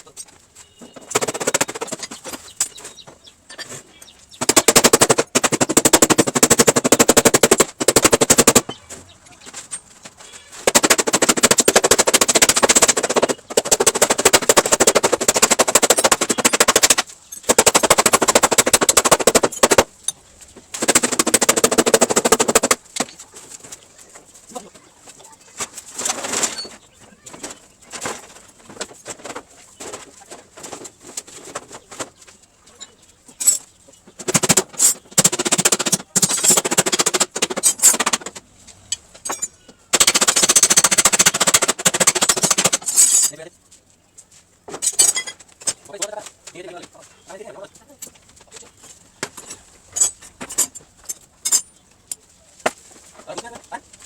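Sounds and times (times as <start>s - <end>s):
power tool rattling: 1.0s - 2.4s, 4.4s - 8.8s, 10.6s - 23.2s, 34.2s - 38.4s, 39.2s - 43.4s.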